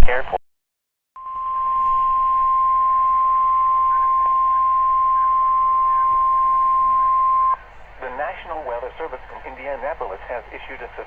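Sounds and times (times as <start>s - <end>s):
faint radio hiss: 0.0s - 0.4s, 1.3s - 11.0s
steady alarm beep: 1.2s - 7.6s.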